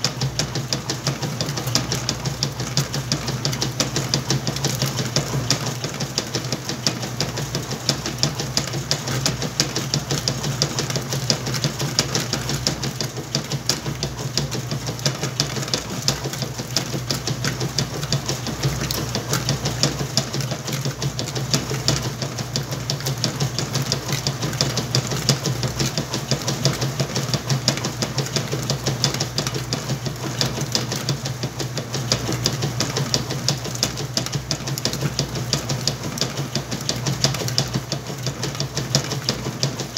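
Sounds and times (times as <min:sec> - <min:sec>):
washing machine motor hum: 0:00.0 - 0:39.9.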